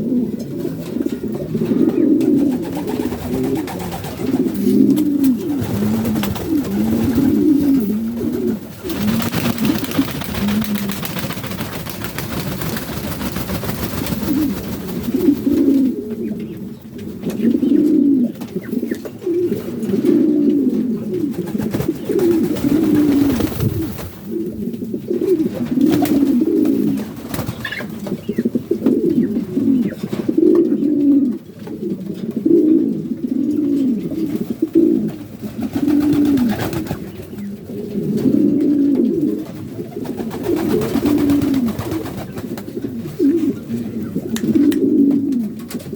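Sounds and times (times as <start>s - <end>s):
pigeons cooing: 0.0s - 45.9s
rustling noise: 0.8s - 15.8s.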